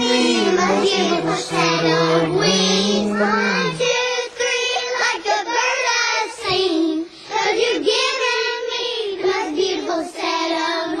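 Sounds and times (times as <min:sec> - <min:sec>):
high voice singing: 0:00.0 - 0:04.9.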